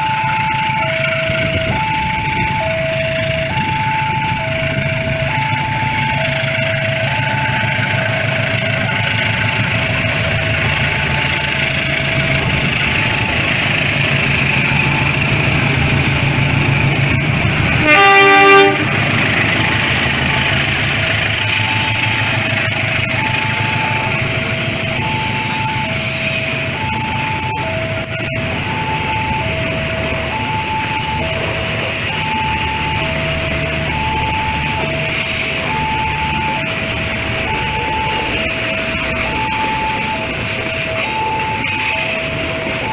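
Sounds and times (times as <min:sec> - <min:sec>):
train running past: 0:00.0 - 0:42.9
two-tone crossing alarm: 0:00.0 - 0:42.9
train horn blast: 0:15.8 - 0:19.7.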